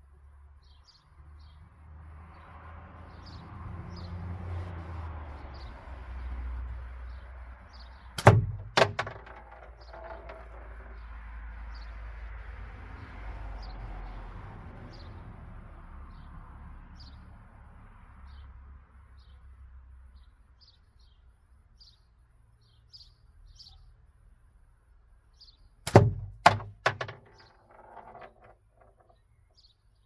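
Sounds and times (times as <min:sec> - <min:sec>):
steel ball hitting rattle target: 0:08.2 - 0:10.7, 0:25.9 - 0:29.0
birds chirping: 0:20.2 - 0:24.0, 0:25.3 - 0:25.8, 0:26.5 - 0:30.0.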